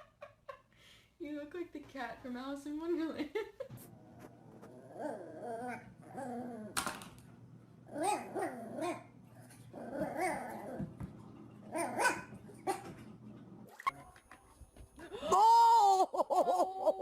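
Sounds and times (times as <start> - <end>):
dog barking and vocalizing: 11.7 - 12.9.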